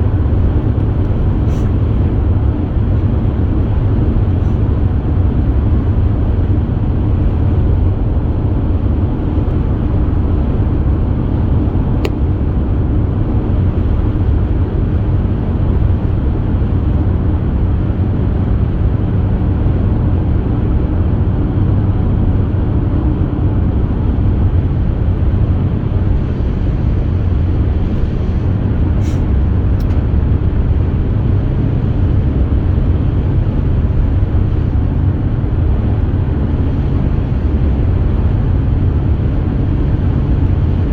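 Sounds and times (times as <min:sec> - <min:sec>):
car road noise: 0:00.0 - 0:18.2.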